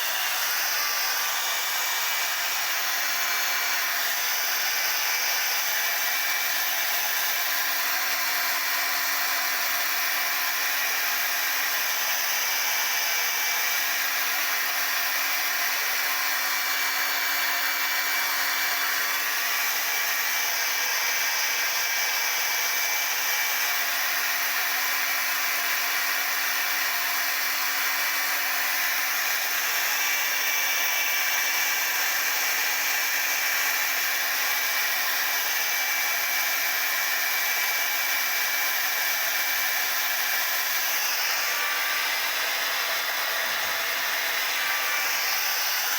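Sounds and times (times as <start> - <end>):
hair dryer running: 0.0 - 45.9.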